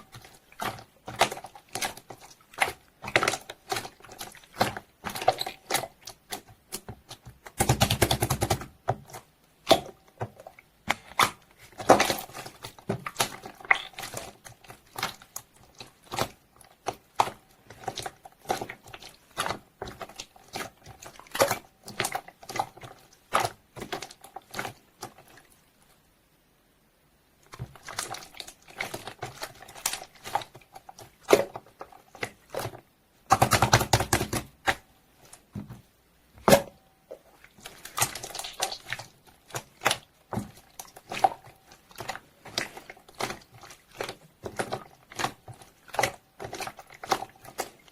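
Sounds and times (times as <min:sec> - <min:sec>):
slime squished by hand: 0:36.4 - 0:47.9.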